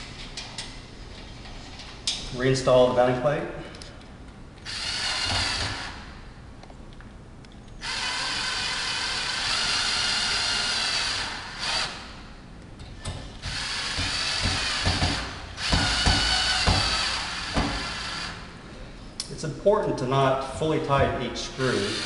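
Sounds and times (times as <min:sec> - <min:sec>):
power drill driving screws: 0:04.7 - 0:06.0, 0:07.8 - 0:12.0, 0:13.4 - 0:18.4, 0:21.7 - 0:22.0.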